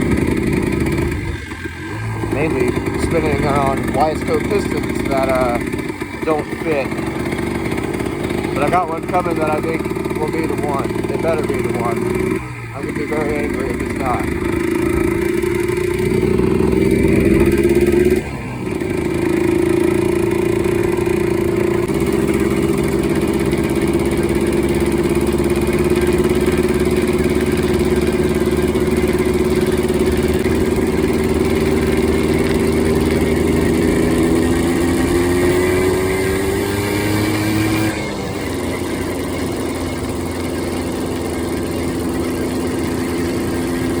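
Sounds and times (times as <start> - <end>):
two-stroke engine running: 0.0 - 44.0.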